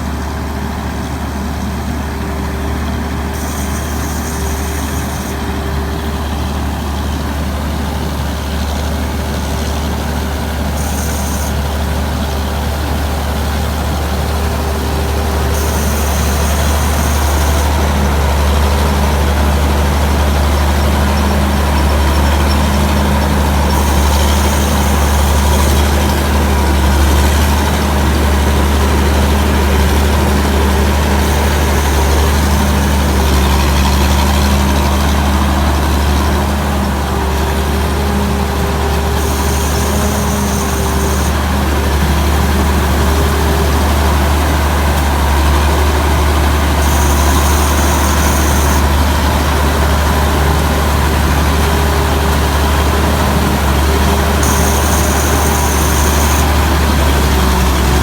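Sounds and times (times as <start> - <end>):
diesel engine deep hum: 0.0 - 58.0.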